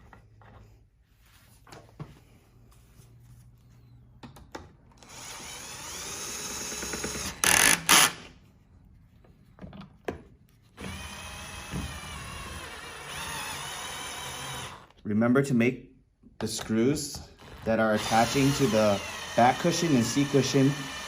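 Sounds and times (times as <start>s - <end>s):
cordless drill driving screws: 5.0s - 8.3s, 10.8s - 14.9s, 17.4s - 21.0s.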